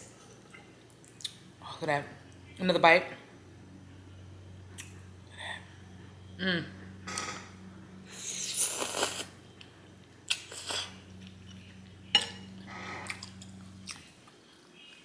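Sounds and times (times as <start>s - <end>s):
low steady hum: 0.0s - 15.0s
slurping noodles: 8.1s - 9.4s, 10.3s - 11.1s
chewing: 8.4s - 15.0s.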